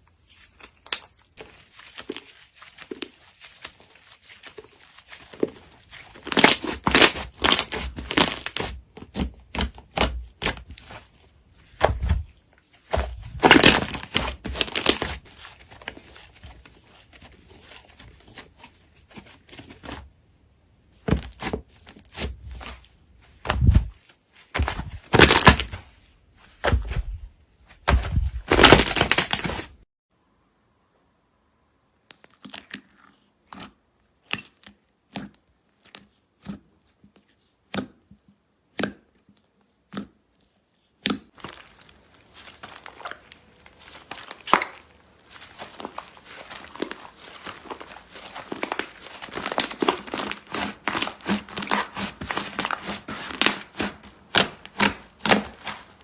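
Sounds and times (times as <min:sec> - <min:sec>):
slime squishing: 0:00.0 - 0:29.8, 0:31.9 - 0:56.0
slime popping and crackling: 0:00.5 - 0:11.1, 0:11.7 - 0:16.5, 0:24.6 - 0:25.8, 0:27.8 - 0:29.7, 0:41.0 - 0:56.0.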